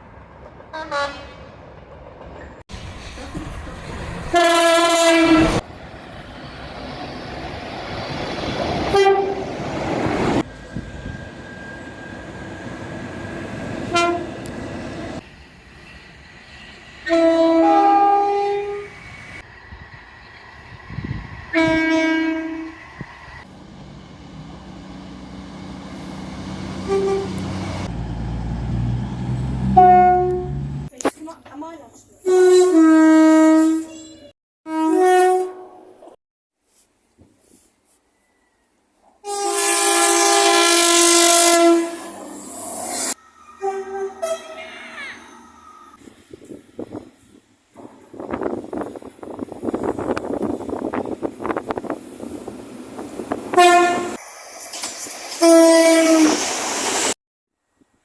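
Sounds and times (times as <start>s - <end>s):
train horn blasts: 0.8s - 1.4s, 4.3s - 5.6s, 8.9s - 9.6s, 13.8s - 14.5s, 17.0s - 18.9s, 21.5s - 22.7s, 23.7s - 27.9s, 28.7s - 30.9s, 34.7s - 36.0s, 39.2s - 42.2s, 43.6s - 44.7s, 53.5s - 54.2s, 55.4s - 56.4s
train running rumble: 1.7s - 17.3s, 19.3s - 30.9s.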